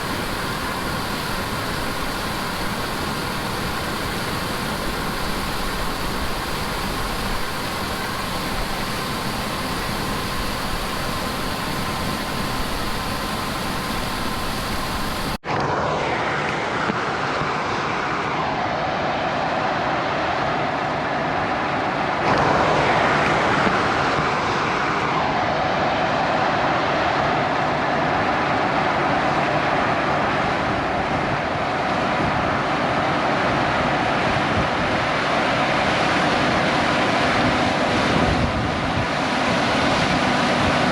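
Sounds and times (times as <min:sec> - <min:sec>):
harvest machinery engines droning: 0:00.0 - 0:15.4.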